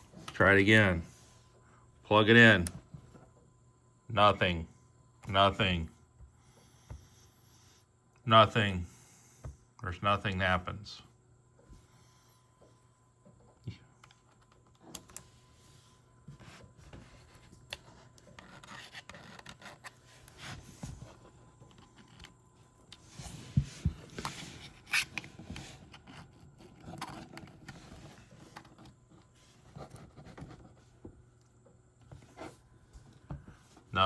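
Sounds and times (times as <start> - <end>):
cable rubbing and scraping: 17.8 - 21.2.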